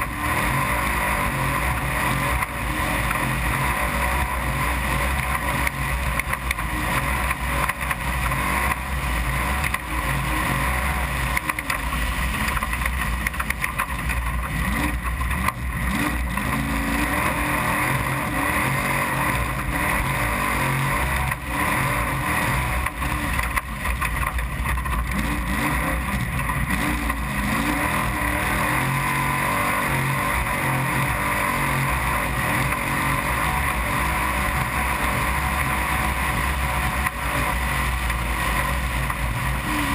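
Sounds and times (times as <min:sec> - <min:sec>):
truck engine running hard: 0:00.0 - 0:39.9
chassis rattle: 0:01.2 - 0:28.2.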